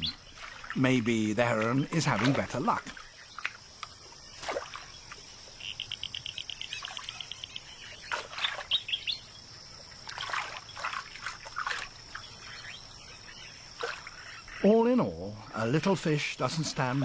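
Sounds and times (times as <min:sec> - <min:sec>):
high insect-like buzz: 0:00.0 - 0:14.7
bird trill: 0:05.6 - 0:09.5.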